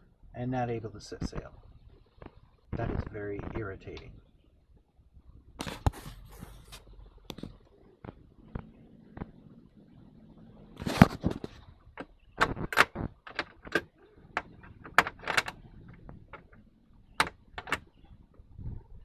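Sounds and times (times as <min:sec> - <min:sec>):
knocks and rattles of handling: 0:10.8 - 0:19.0.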